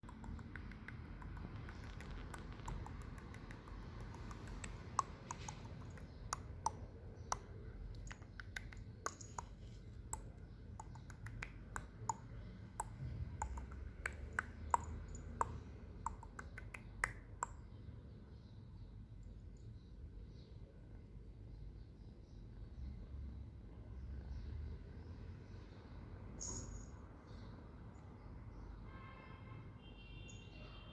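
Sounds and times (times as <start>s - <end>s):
tongue clicking: 0.0s - 17.6s.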